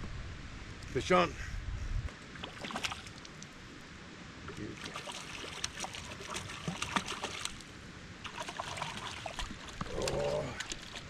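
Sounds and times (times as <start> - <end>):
stream water: 2.1 - 11.0
fish splashing at surface: 2.4 - 3.2, 4.8 - 7.6, 8.2 - 11.0.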